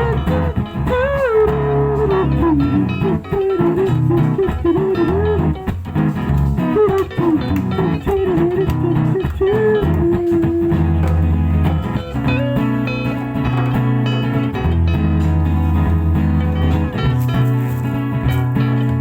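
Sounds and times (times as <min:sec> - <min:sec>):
bass line: 0:00.0 - 0:19.0
lead guitar melody: 0:00.0 - 0:19.0.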